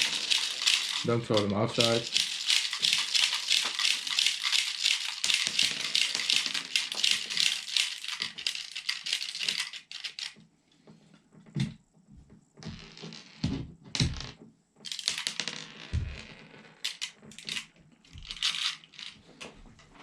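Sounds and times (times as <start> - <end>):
plastic pellets pouring and rattling: 0.0 - 10.3.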